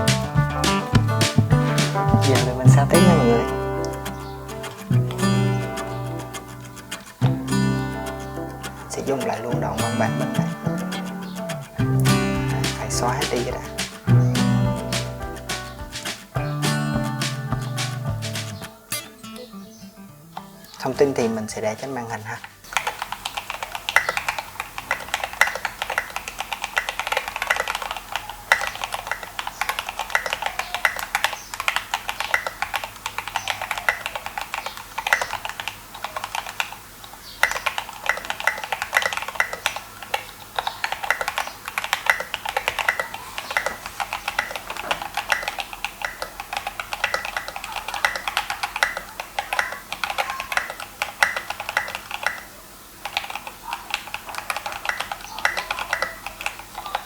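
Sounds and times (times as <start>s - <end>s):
mechanical keyboard typing: 40.9s - 57.0s.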